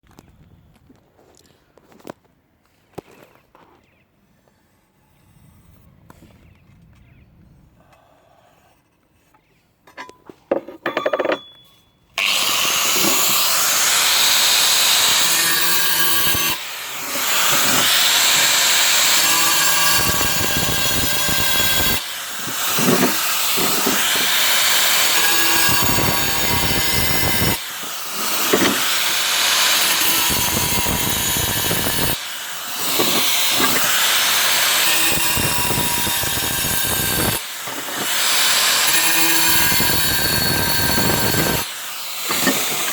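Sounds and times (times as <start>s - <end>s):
angle grinder cutting tile: 12.2s - 42.9s.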